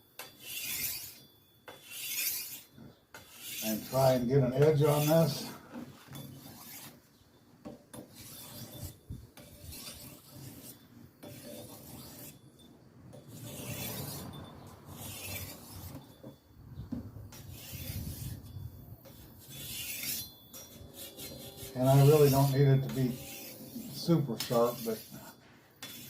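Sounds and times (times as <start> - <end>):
blade sharpened on stone: 0.2 - 3.9, 6.3 - 7.0, 8.0 - 12.4, 13.2 - 14.3, 15.0 - 16.0, 17.3 - 26.0.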